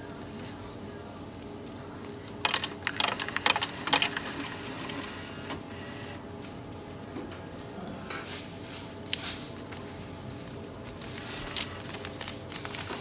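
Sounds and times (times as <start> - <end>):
coins clinking in machine slot: 1.4 - 5.6.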